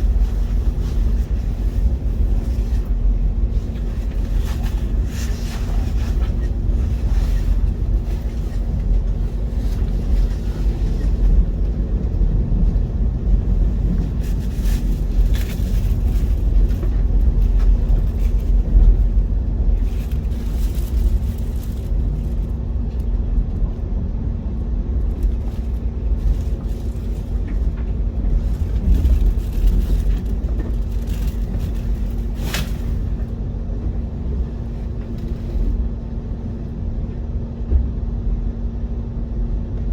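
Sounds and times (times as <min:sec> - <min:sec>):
mechanical hum: 0:00.0 - 0:39.9
train rumbling: 0:00.0 - 0:39.9.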